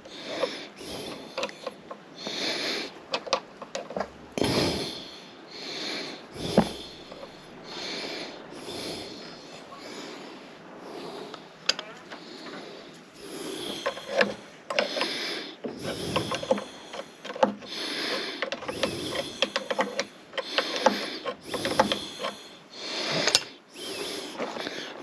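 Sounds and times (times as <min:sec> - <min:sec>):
metal parts clicking and rasping: 0:00.0 - 0:04.9, 0:06.4 - 0:07.4, 0:13.4 - 0:25.0.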